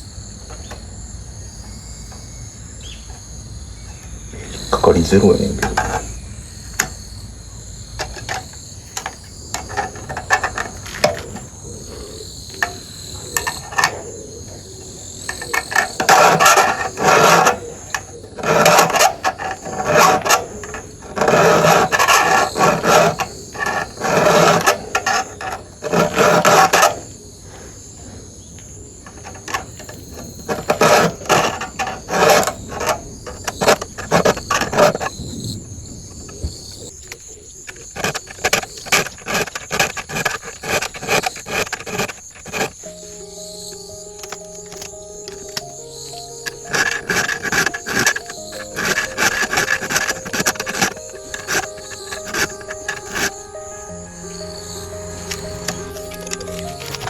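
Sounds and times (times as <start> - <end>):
file rasping on chainsaw chain: 15.2 - 27.0, 30.2 - 33.0, 37.9 - 43.0, 46.4 - 53.4.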